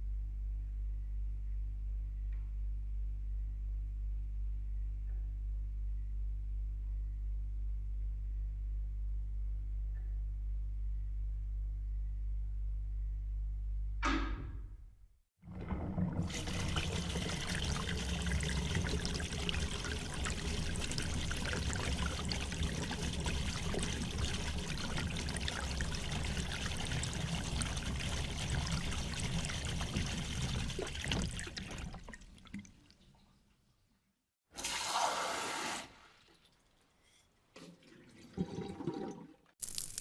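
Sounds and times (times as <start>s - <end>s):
water running in a stream: 15.5s - 33.2s.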